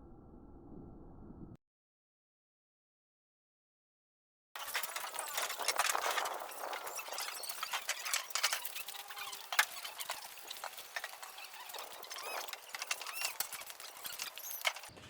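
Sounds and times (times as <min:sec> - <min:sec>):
high chirps or squeaks: 0:04.6 - 0:15.0.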